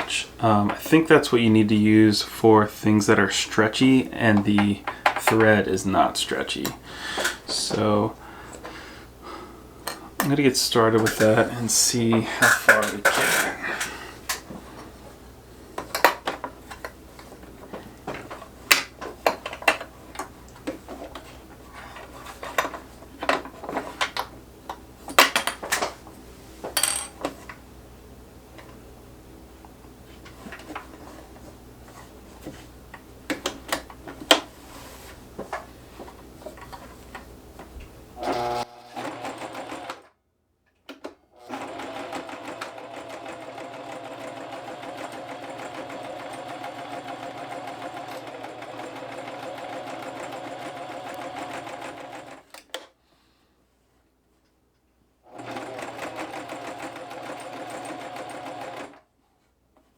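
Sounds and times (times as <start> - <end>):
sewing machine running: 38.2 - 40.1, 41.4 - 52.5, 55.3 - 59.0.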